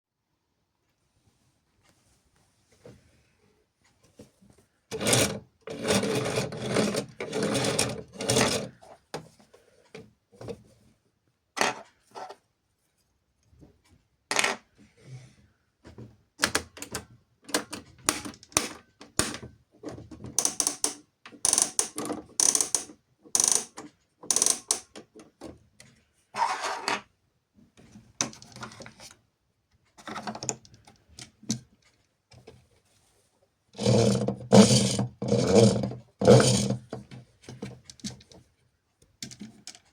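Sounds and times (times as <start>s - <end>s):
plastic toys clicking and rattling: 20.4s - 25.2s.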